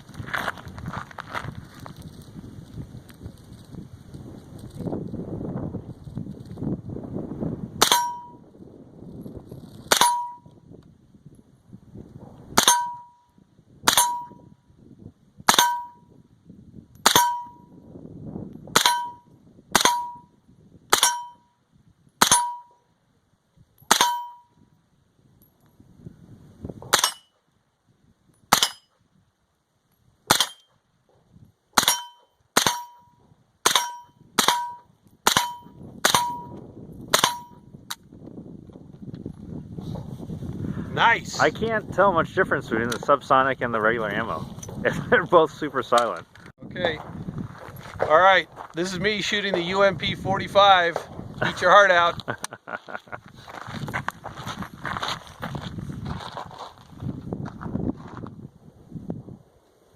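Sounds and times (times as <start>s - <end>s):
suppressed gunshots with metallic ring: 7.8s - 8.4s, 9.9s - 10.5s, 12.6s - 13.2s, 13.9s - 14.5s, 15.5s - 16.0s, 17.0s - 17.6s, 18.8s - 19.2s, 19.8s - 20.3s, 20.9s - 21.4s, 22.2s - 22.8s, 23.9s - 24.5s, 26.9s - 27.3s, 28.5s - 28.9s, 30.3s - 30.7s, 31.8s - 37.6s.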